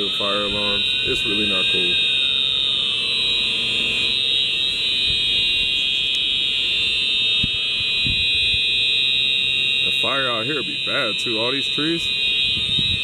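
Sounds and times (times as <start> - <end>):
fire alarm high-pitched tone: 0.0 - 13.0.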